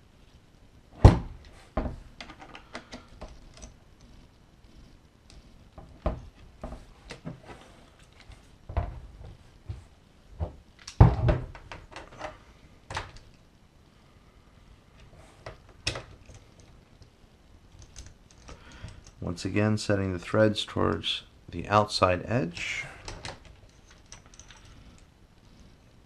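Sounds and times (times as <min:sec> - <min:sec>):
metal parts knocking and clicking: 0:23.0 - 0:24.7.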